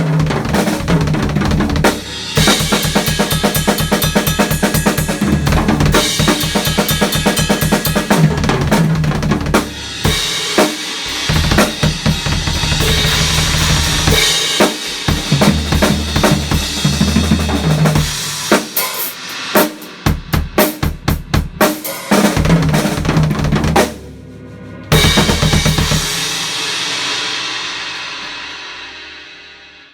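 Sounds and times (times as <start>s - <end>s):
drum kit playing: 0.0s - 29.8s
cymbal ringing: 2.0s - 8.6s.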